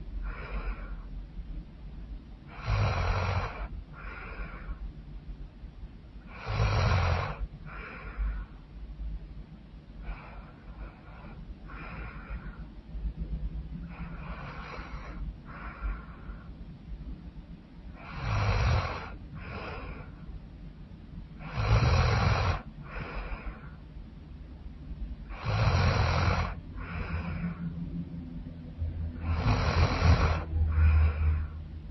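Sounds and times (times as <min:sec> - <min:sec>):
soft breath: 0:00.0 - 0:01.6, 0:02.4 - 0:05.2, 0:06.2 - 0:09.2, 0:09.9 - 0:31.9
woman snoring: 0:02.5 - 0:04.7, 0:06.3 - 0:08.0, 0:13.9 - 0:15.9, 0:18.0 - 0:20.1, 0:21.4 - 0:23.6, 0:25.3 - 0:27.6, 0:29.2 - 0:31.6.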